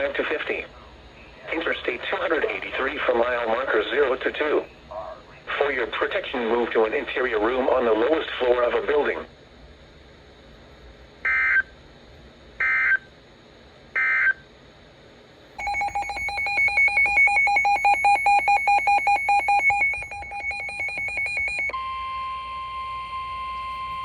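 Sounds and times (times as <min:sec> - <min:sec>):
warbling electronic alert tone: 0:15.6 - 0:21.8
data tone bursts: 0:15.6 - 0:24.0.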